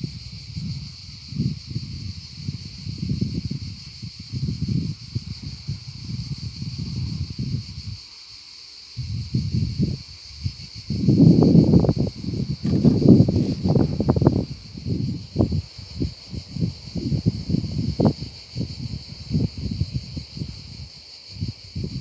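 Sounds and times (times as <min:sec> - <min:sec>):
high-pitched insect drone: 0:00.0 - 0:22.0
rumbling wind gusts: 0:09.0 - 0:22.0.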